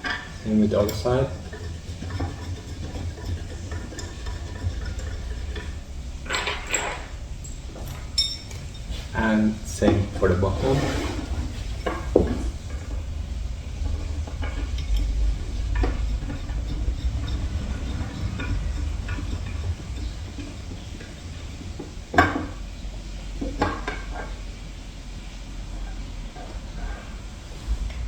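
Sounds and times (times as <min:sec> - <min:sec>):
small metallic clinks and scrapes: 0:00.0 - 0:13.1, 0:13.7 - 0:22.6.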